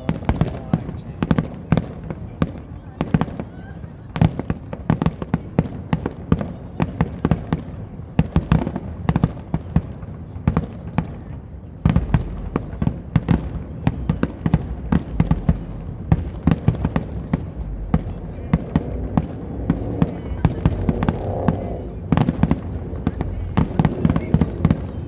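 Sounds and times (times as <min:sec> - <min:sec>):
fireworks bangs and crackles: 0:00.0 - 0:25.0
deep rumble: 0:12.0 - 0:25.0.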